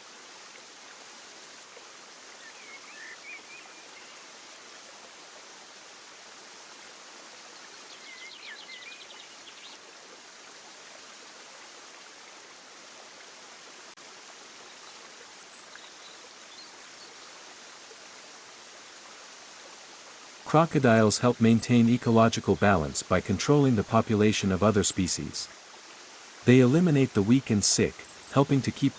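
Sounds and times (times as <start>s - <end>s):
running water: 0.0s - 28.9s
bird chirps: 28.0s - 28.9s.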